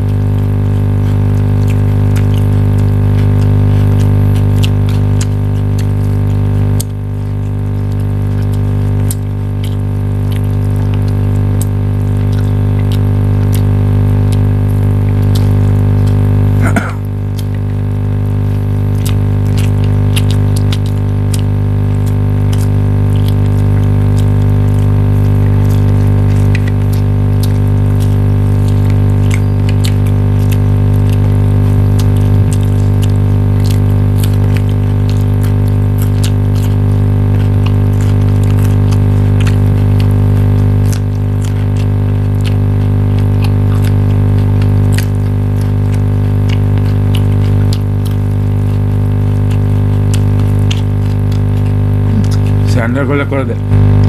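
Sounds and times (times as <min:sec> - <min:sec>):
loud low hum: 0:00.0 - 0:54.0.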